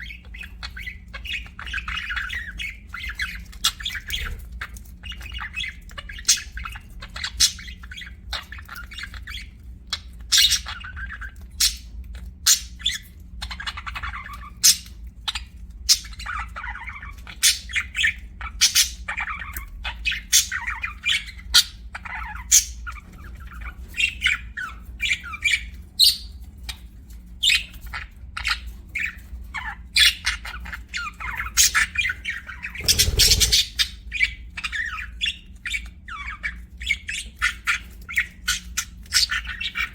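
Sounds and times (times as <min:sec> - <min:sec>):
budgerigars chirping and squawking: 0:00.0 - 0:39.9
steady low hum: 0:32.2 - 0:34.2.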